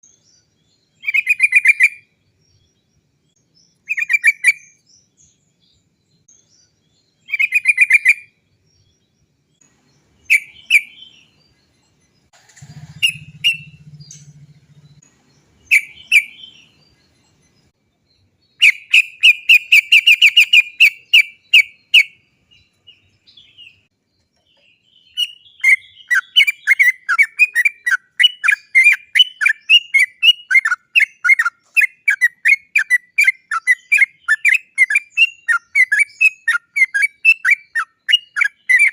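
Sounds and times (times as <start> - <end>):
bulbul singing chattering notes: 12.6 - 17.7.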